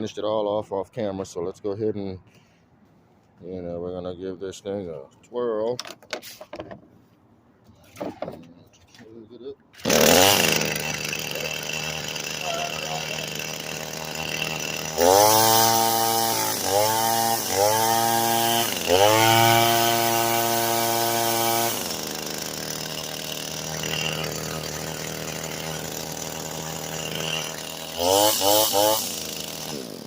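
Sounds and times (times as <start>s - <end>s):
string trimmer engine revving: 9.8s - 30.0s.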